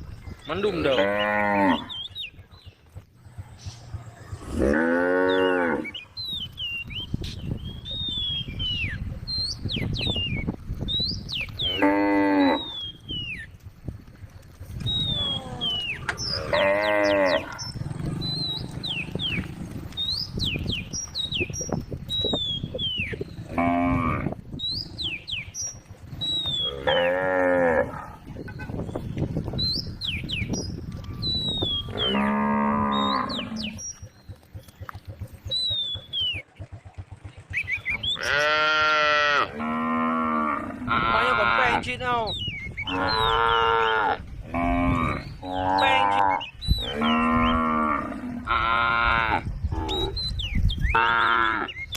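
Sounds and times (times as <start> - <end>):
cows mooing: 0.6 - 2.0, 3.9 - 6.1, 11.5 - 12.9, 15.0 - 20.0, 23.1 - 25.3, 26.3 - 28.4, 31.8 - 34.0, 37.8 - 41.9, 42.8 - 50.3, 50.9 - 51.8.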